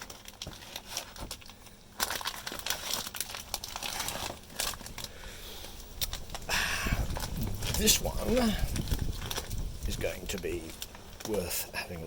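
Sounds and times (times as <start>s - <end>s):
plastic bag crinkling: 0.0s - 12.0s.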